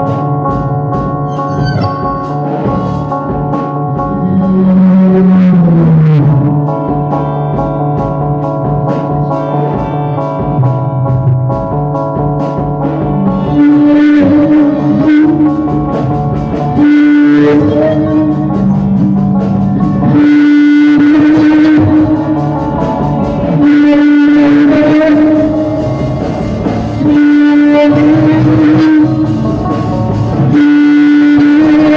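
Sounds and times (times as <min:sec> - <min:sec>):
bass line: 0:00.0 - 0:31.9
drum kit beat: 0:00.0 - 0:31.9
long held guitar notes: 0:01.1 - 0:07.7, 0:13.0 - 0:31.9.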